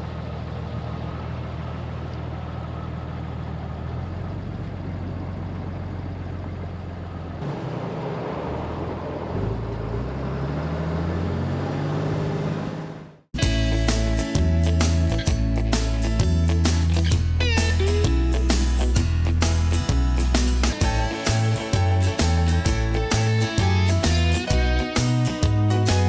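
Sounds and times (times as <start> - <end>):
diesel truck engine accelerating: 0.0 - 26.0
guitar music: 13.4 - 26.0.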